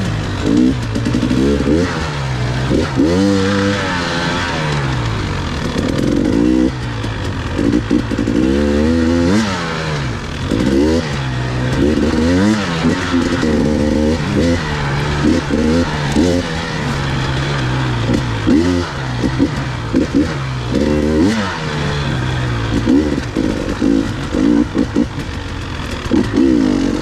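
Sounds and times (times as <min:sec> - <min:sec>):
motorcycle engine revving: 0:00.0 - 0:27.0.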